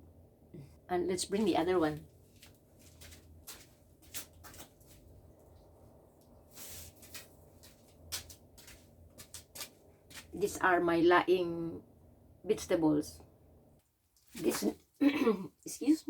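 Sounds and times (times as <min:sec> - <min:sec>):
short rustle: 0:06.4 - 0:10.4.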